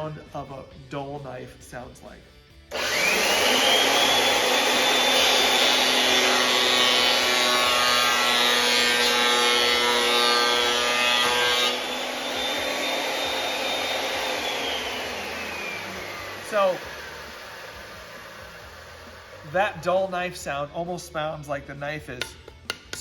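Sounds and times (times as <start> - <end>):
planer whining: 2.7 - 19.5
planer knives slapping wood: 22.2 - 23.0.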